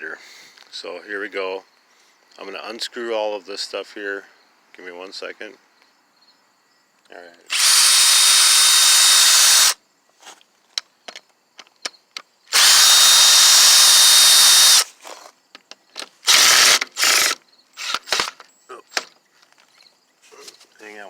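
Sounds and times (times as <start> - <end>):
electric drill whining: 7.5 - 9.8, 12.5 - 14.9, 16.2 - 18.4.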